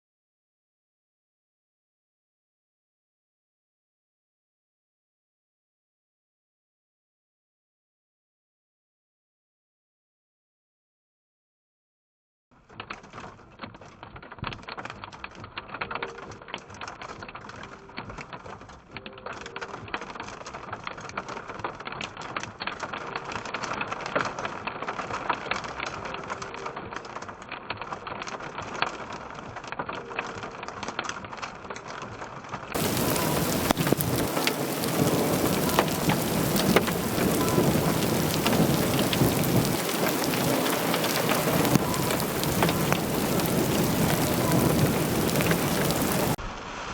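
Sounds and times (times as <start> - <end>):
heavy rain pelting: 32.8 - 46.9.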